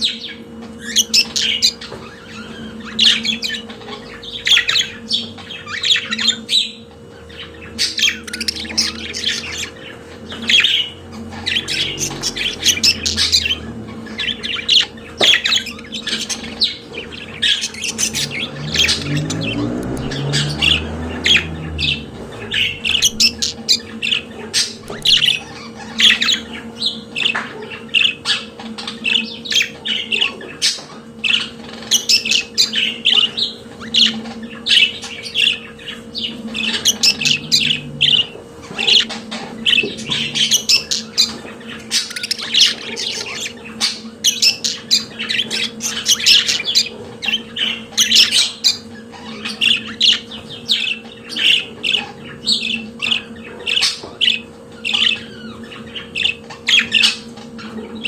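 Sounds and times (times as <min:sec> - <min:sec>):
budgerigars chattering and warbling: 0:00.0 - 0:58.0
low hum: 0:07.2 - 0:27.2, 0:34.2 - 0:41.4.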